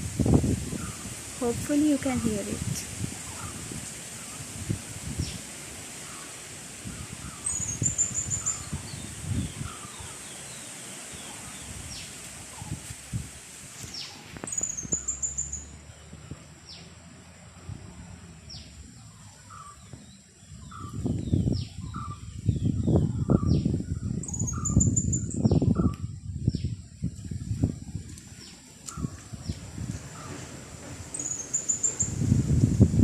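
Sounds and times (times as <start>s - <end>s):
wind buffeting microphone: 0.0s - 33.0s
small birds chirping: 6.0s - 12.8s, 13.8s - 17.0s, 18.4s - 30.4s, 31.1s - 32.3s
high bird trill: 14.0s - 15.8s, 20.5s - 25.9s.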